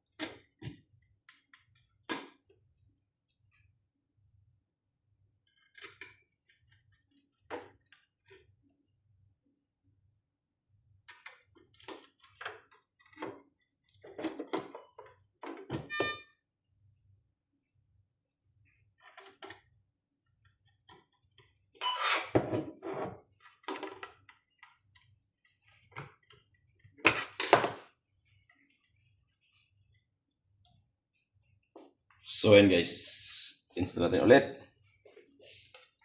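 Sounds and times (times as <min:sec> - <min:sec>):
brief ringing tone: 0:15.9 - 0:16.4.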